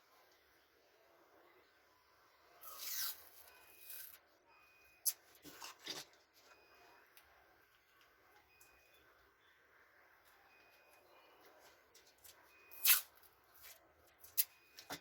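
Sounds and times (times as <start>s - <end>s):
faint high beeps: 2.6s - 5.3s, 8.3s - 11.6s, 12.4s - 13.2s, 14.4s - 15.0s.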